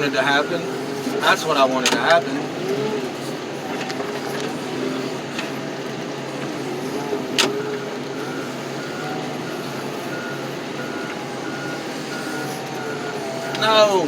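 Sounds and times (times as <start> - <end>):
heavy vehicle engine running: 0.0 - 14.0
backup alarm beeping: 7.4 - 13.9.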